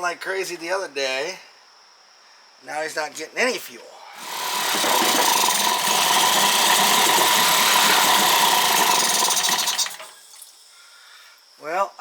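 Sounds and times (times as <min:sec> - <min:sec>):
outboard motor running: 0:04.2 - 0:10.2.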